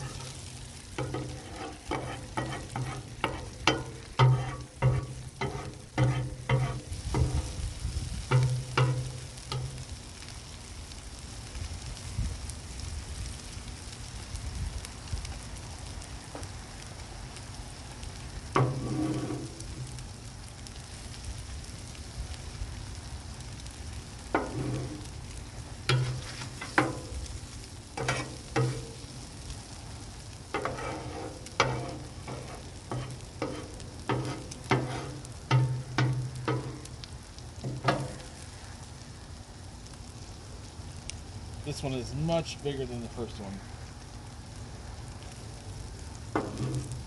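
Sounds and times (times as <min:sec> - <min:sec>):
metal spatula scraping griddle: 0:00.0 - 0:09.8, 0:18.6 - 0:20.0, 0:24.2 - 0:29.3, 0:30.5 - 0:37.0, 0:37.6 - 0:38.4, 0:46.3 - 0:47.0
food sizzling: 0:00.0 - 0:47.0.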